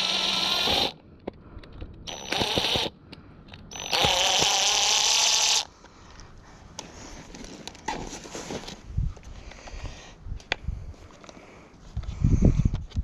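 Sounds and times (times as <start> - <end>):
cordless drill whining: 0.0 - 1.0, 2.1 - 3.0, 3.7 - 5.7.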